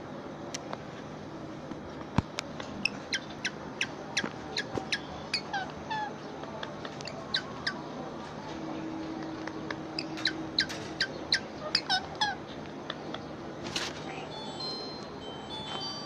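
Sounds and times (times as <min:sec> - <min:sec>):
parrot chirping: 0:02.8 - 0:07.8, 0:09.6 - 0:12.5.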